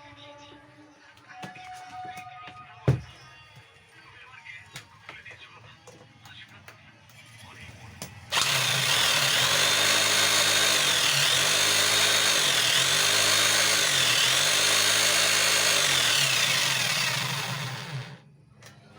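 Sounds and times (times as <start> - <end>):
breaker hammer motor whining: 8.3 - 18.2.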